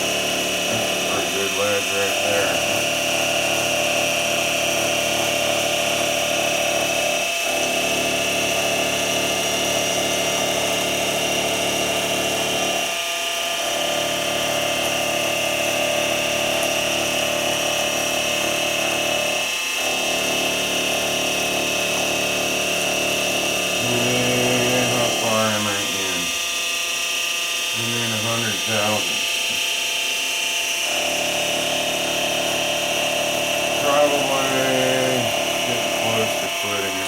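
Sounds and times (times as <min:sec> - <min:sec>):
milling machine whine: 0:00.0 - 0:37.0.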